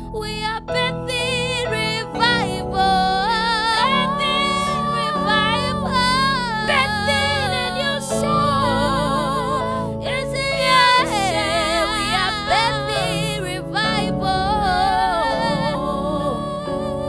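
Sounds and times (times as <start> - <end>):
sustained keyboard chords: 0.0 - 17.0.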